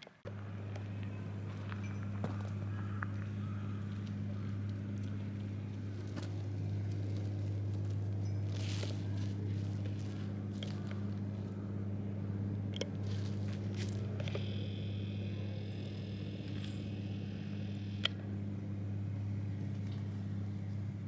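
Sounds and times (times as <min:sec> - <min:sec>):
low mechanical hum: 0:00.0 - 0:21.0
sharp clicks: 0:16.4 - 0:18.3.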